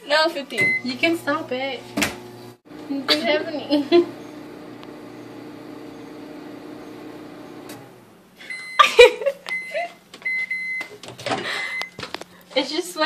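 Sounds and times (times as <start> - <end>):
microwave oven humming: 0.6 - 10.8.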